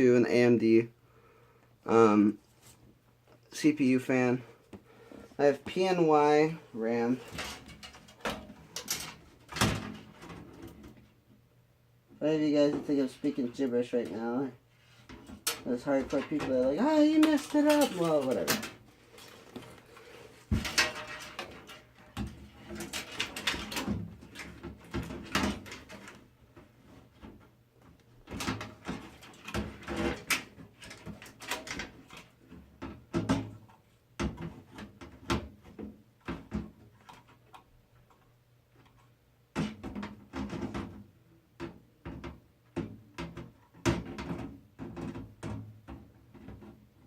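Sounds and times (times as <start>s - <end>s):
computer parts clicking and knocking: 15.0s - 19.7s, 20.4s - 26.2s.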